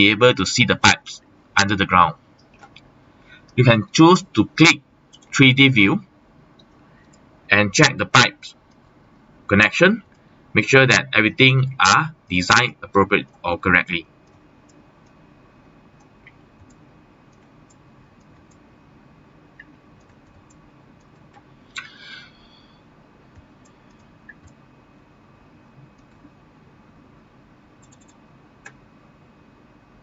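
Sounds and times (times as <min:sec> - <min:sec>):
mouse and keyboard clicks: 0:27.8 - 0:28.8.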